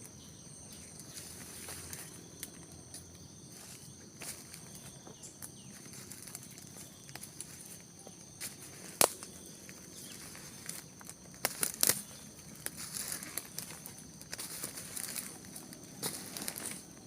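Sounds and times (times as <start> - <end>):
birds chirping: 0.0 - 17.0
insects buzzing: 0.0 - 17.0
sharp crackles and snaps: 8.8 - 16.9.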